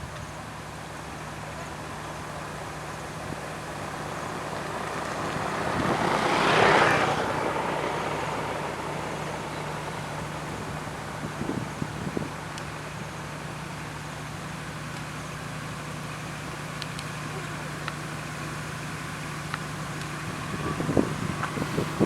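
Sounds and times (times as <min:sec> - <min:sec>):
road roller diesel engine: 0:00.0 - 0:22.0
vehicle passing by: 0:03.0 - 0:12.3, 0:19.8 - 0:22.0.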